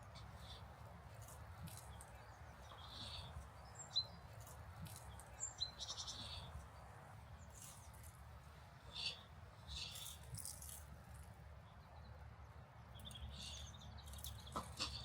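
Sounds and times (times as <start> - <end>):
low outdoor background noise: 0.0 - 15.0
bird chirps: 8.9 - 10.3, 13.0 - 15.0.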